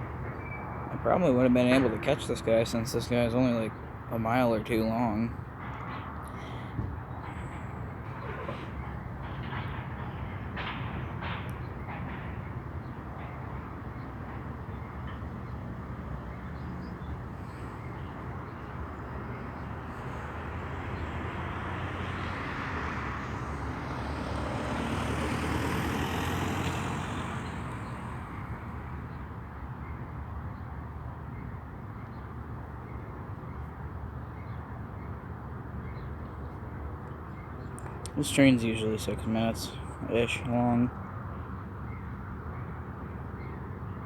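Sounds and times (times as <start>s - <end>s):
freight train wheels rumbling: 0.0s - 23.8s.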